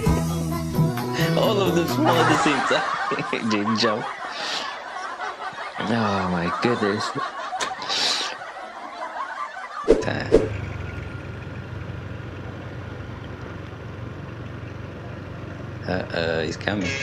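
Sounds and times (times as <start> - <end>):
street noise: 2.0 - 17.0
truck engine rumbling: 9.8 - 17.0
short sharp sounds: 9.9 - 10.6.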